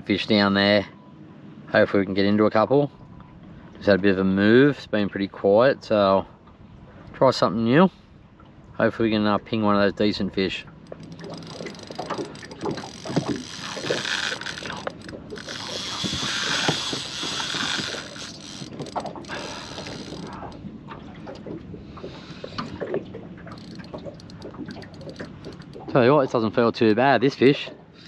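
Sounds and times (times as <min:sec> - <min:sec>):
fishing reel winding: 0:10.9 - 0:20.6, 0:23.5 - 0:25.8.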